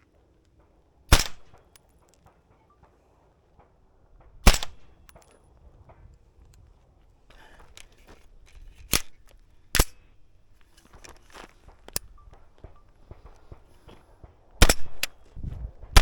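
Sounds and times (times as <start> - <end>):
suppressed gunshots: 1.1 - 1.7, 4.2 - 6.0, 8.9 - 15.2, 15.8 - 16.0.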